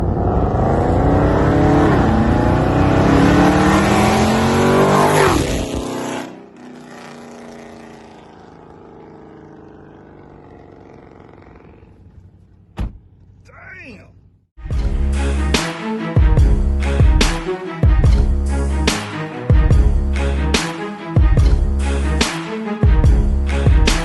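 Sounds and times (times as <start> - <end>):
loud car engine revving: 0.0 - 12.4.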